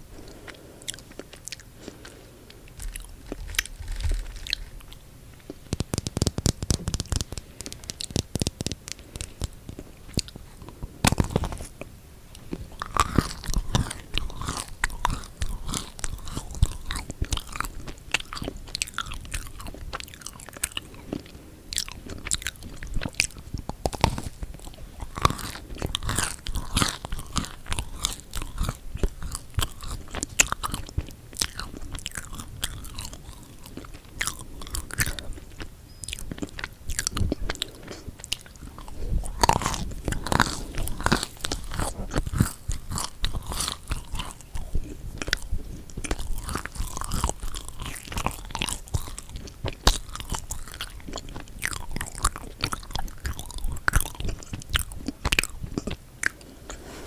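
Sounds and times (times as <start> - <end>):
chewing: 0.2 - 57.0
cookie crunching: 0.2 - 57.0.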